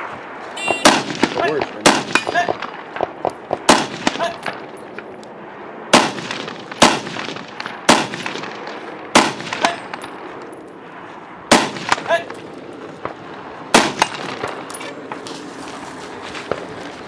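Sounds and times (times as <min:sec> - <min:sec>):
rifle shots with echo: 0:00.6 - 0:04.8, 0:05.9 - 0:10.2, 0:11.5 - 0:12.4, 0:13.0 - 0:14.6.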